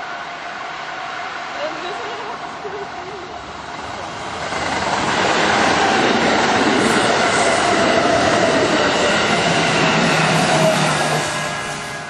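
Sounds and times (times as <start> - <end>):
electric train passing: 0.0 - 12.0
train wheels on rails: 0.0 - 12.0.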